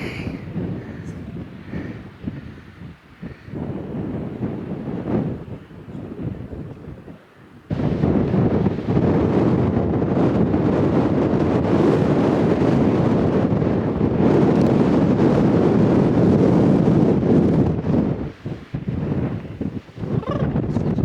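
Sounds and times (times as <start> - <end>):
strong wind buffeting microphone: 0.0 - 21.0.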